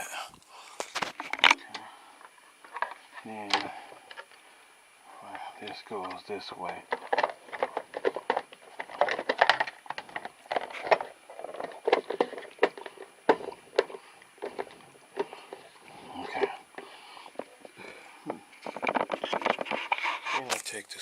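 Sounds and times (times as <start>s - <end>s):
plastic parts clicking and knocking: 6.0s - 15.7s, 18.2s - 20.6s.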